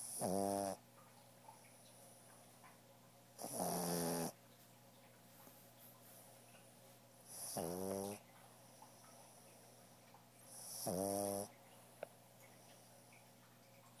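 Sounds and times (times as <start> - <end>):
dog snoring: 0.0 - 0.8, 3.4 - 4.4, 7.3 - 8.2, 10.5 - 11.5.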